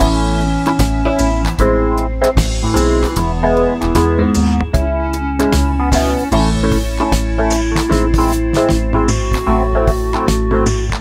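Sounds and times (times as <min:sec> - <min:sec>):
keyboard and guitar music: 0:00.0 - 0:11.0.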